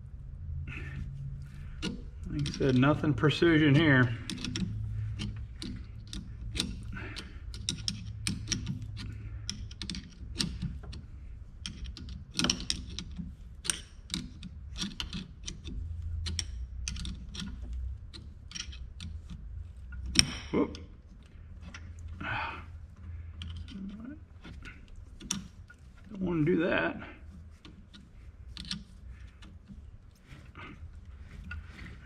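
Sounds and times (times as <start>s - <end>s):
low steady hum: 0.0s - 32.0s
tools clicking and scraping: 0.7s - 32.0s.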